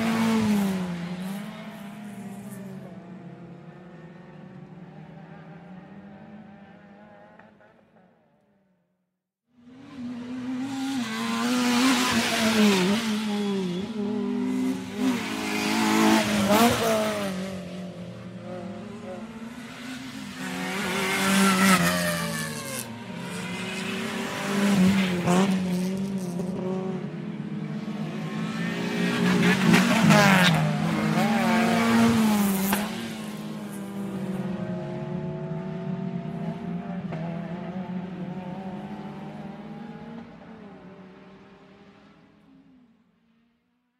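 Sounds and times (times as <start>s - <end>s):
sports car engines revving: 9.7s - 41.9s.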